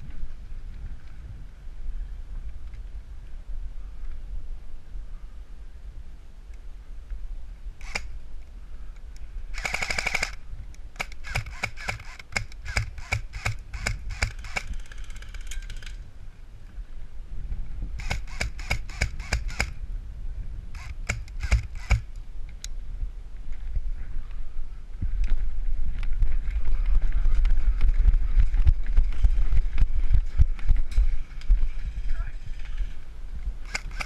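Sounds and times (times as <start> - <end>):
airsoft guns firing: 9.6 - 10.4, 11.0 - 15.3, 18.0 - 19.8, 20.8 - 22.1.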